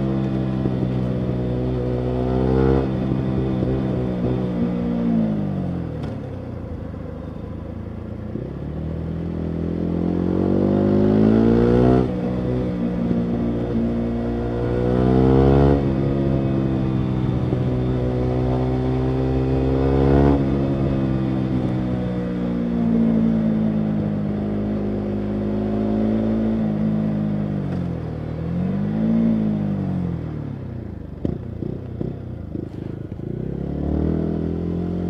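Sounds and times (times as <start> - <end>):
motorcycle engine revving: 0.0 - 6.3, 8.3 - 35.0.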